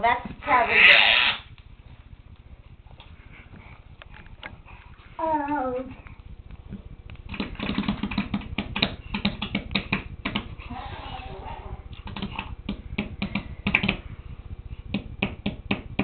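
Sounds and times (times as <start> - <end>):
rapid sharp taps: 6.1 - 10.6, 11.9 - 14.1, 14.9 - 16.0.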